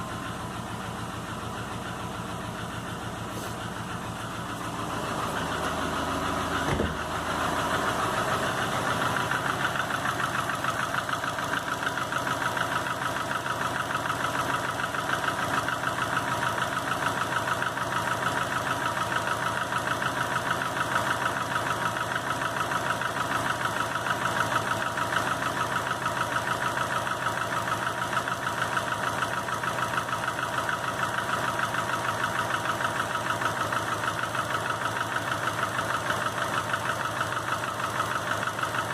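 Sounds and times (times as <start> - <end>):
car engine idling with knocking: 0.0 - 38.9.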